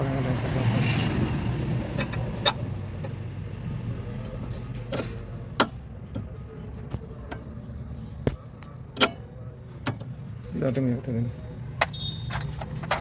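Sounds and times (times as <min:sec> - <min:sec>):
hand tools clicking and knocking: 0:11.8 - 0:13.0.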